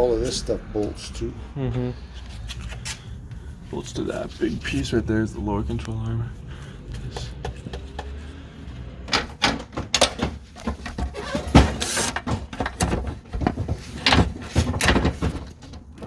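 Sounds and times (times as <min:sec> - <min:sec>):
tools clanking on metal parts: 0:09.1 - 0:16.0.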